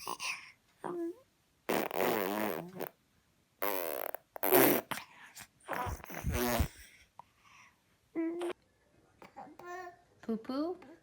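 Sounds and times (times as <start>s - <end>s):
baby farting: 1.7s - 3.0s, 3.6s - 5.0s, 5.7s - 6.8s.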